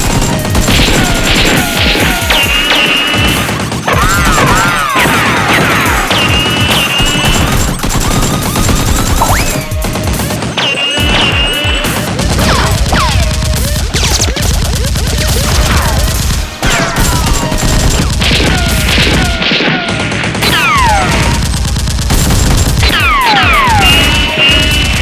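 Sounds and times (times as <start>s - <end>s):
background music: 0.0s - 19.6s, 22.2s - 25.0s
gunfire bursts: 0.0s - 25.0s
falling whistles: 1.5s - 12.3s, 23.0s - 25.0s.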